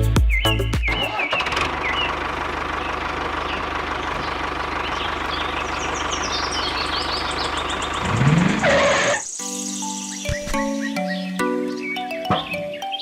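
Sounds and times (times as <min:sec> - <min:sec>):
tractor engine idling: 0:00.4 - 0:09.2.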